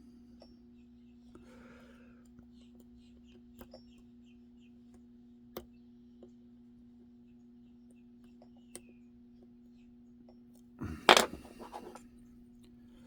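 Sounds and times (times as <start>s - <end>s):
lock pick clicking: 11.0s - 11.9s.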